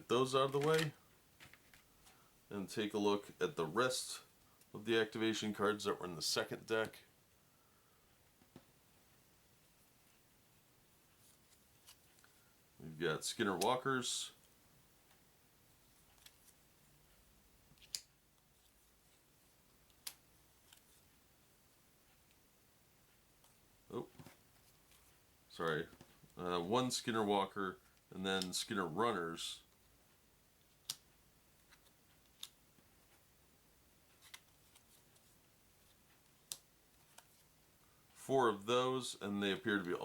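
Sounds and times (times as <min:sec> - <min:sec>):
game cards clicking as laid down: 0:00.5 - 0:01.9.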